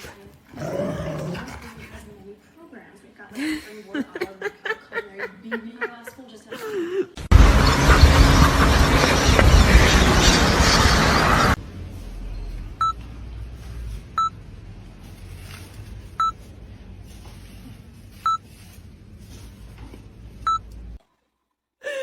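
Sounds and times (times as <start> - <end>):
loud rushing noise: 7.2 - 11.6.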